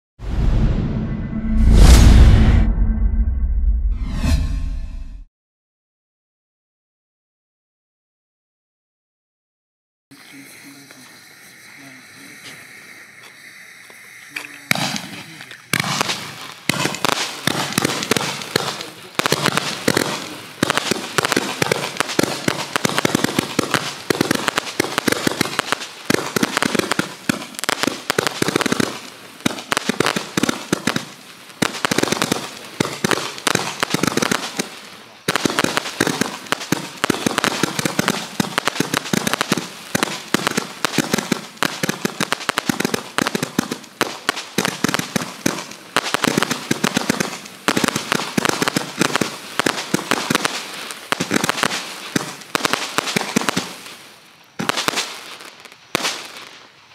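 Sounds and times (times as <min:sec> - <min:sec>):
firework barrage firing rapidly: 0:14.6 - 0:53.8.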